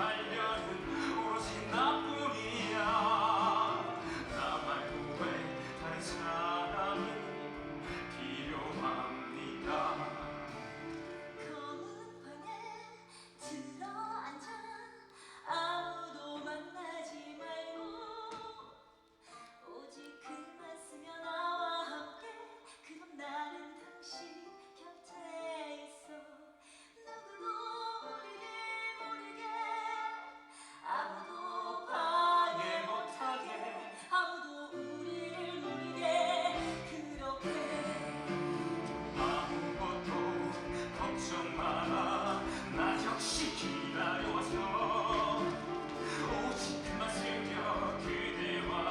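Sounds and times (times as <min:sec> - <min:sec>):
instrumental accompaniment: 0:00.0 - 0:12.8, 0:34.8 - 0:48.9
person singing: 0:00.0 - 0:14.9, 0:30.8 - 0:48.9.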